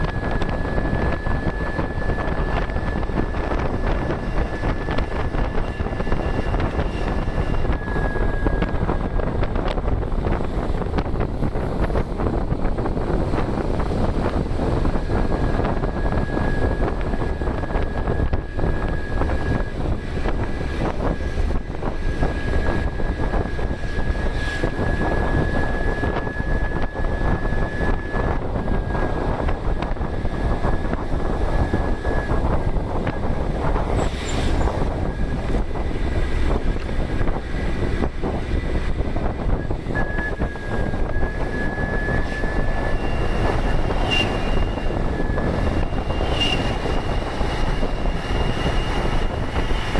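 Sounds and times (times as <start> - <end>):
diesel bus engine running: 0.0 - 49.9
road noise: 0.0 - 49.9
turbocharger whistle: 39.4 - 49.9.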